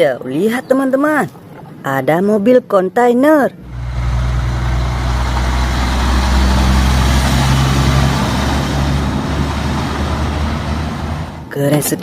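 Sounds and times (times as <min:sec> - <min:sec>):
truck engine rumbling: 0:03.6 - 0:11.8.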